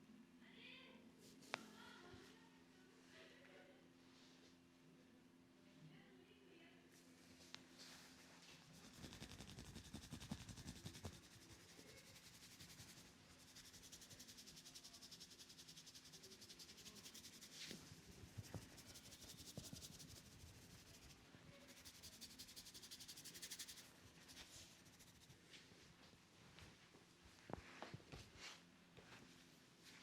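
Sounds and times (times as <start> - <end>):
hands rubbing through hair: 8.7 - 25.4.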